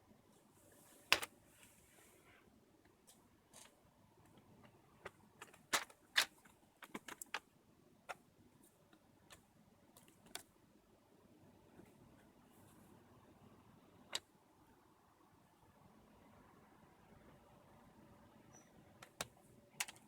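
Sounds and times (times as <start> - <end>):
plastic and metal clicks: 19.0 - 20.0.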